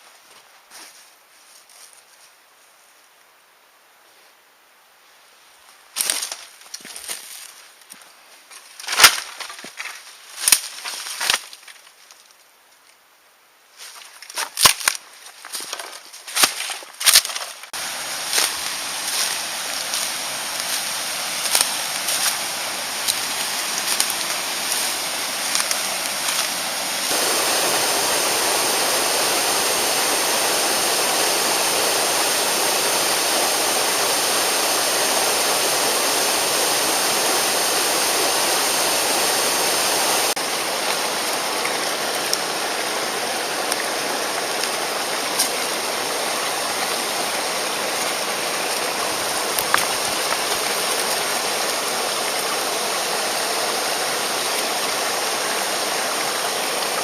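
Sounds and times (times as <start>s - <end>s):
stream rushing over rocks: 17.7s - 57.0s.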